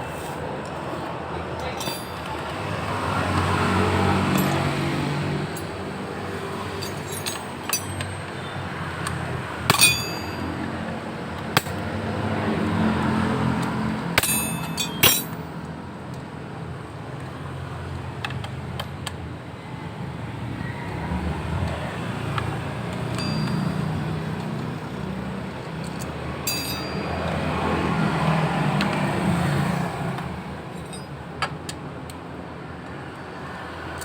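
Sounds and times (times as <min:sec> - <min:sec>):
metal tools clinking together: 0:01.6 - 0:02.7, 0:04.2 - 0:05.8, 0:06.7 - 0:10.6, 0:14.2 - 0:15.4, 0:23.1 - 0:23.8, 0:25.8 - 0:27.1, 0:30.7 - 0:31.2.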